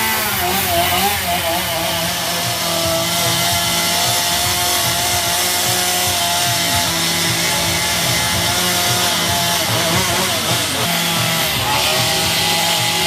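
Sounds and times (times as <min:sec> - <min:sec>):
chainsaw cutting log: 0:00.0 - 0:13.0.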